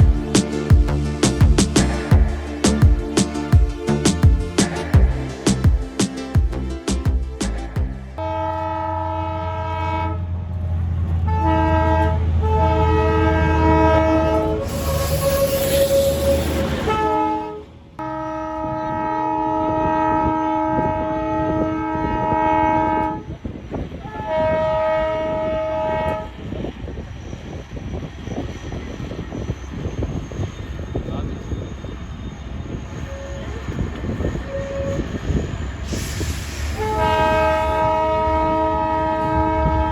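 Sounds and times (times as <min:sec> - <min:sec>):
low rumble: 0:00.0 - 0:08.2
train horn blasts: 0:08.2 - 0:10.5, 0:11.2 - 0:23.3, 0:24.0 - 0:26.4, 0:34.4 - 0:35.2, 0:35.9 - 0:39.9
loud hiss: 0:14.6 - 0:16.8, 0:35.8 - 0:37.9.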